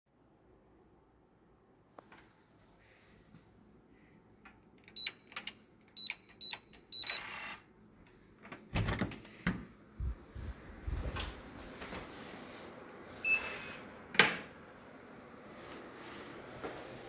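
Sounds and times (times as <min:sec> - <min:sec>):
keypad beeps: 0:04.9 - 0:07.6, 0:13.2 - 0:13.7
door latch and door thumps: 0:08.7 - 0:09.7
rush of air: 0:10.0 - 0:11.6.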